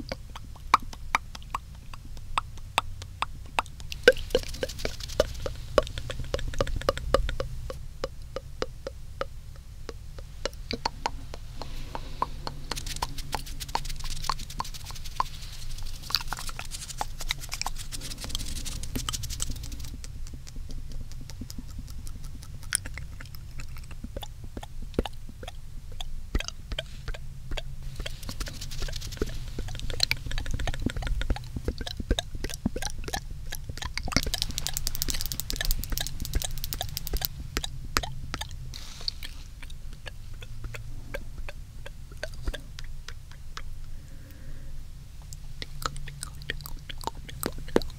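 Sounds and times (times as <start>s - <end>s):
tongue clicks and mouth smacks: 0.0s - 44.4s, 45.2s - 47.9s
low steady rumble: 0.0s - 47.9s.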